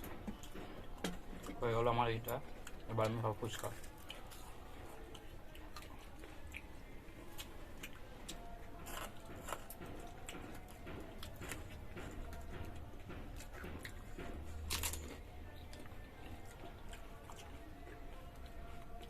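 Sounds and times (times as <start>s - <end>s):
crisp crunches of chewing: 2.6s - 10.5s.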